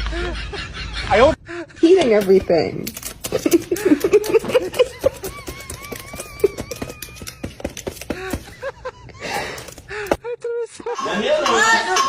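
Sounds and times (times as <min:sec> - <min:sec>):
beaks tapping on feed: 0:02.1 - 0:08.6.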